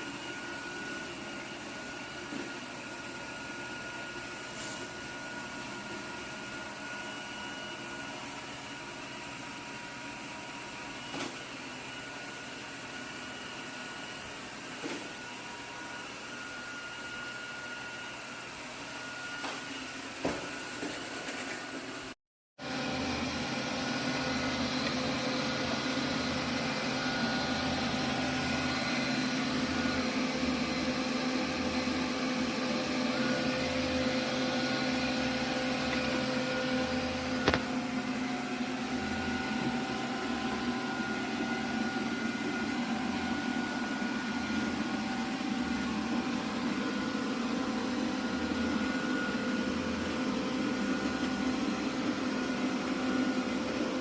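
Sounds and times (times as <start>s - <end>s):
robot vacuum motor hum: 22.6s - 54.0s.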